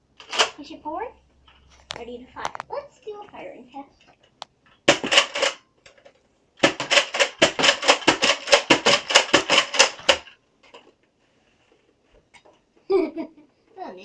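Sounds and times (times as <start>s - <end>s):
toy dart blaster clacking: 4.9s - 5.6s, 6.6s - 10.3s.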